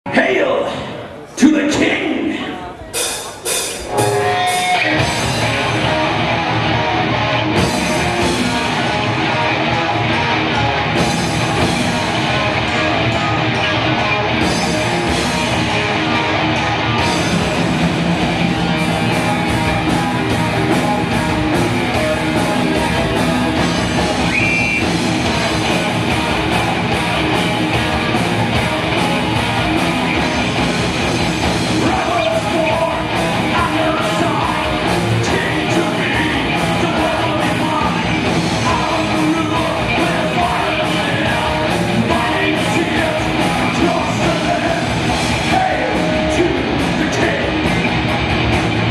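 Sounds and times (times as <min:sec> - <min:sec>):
drums: 0:00.0 - 0:48.9
distorted electric guitars: 0:00.1 - 0:48.9
person singing: 0:31.8 - 0:47.8.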